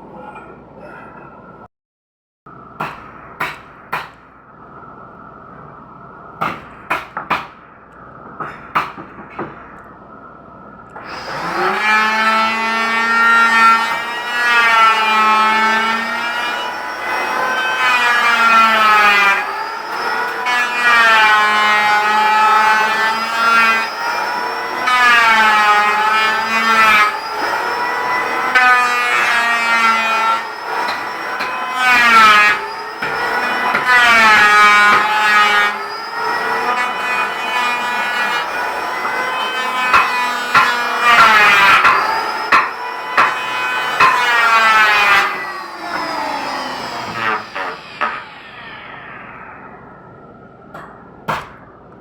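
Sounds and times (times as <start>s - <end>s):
power tool cutting wood: 11.0s - 49.4s.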